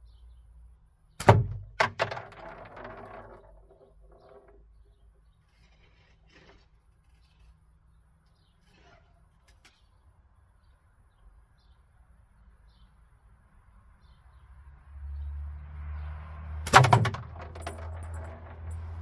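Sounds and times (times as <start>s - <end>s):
target clattering rattle: 1.2s - 4.8s, 16.7s - 19.0s.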